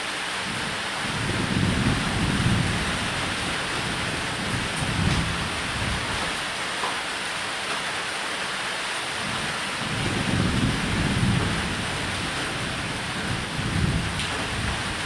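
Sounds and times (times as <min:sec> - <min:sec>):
rain falling on a roof: 0:00.0 - 0:15.0
thunder rumbling: 0:00.5 - 0:06.4, 0:09.3 - 0:15.0.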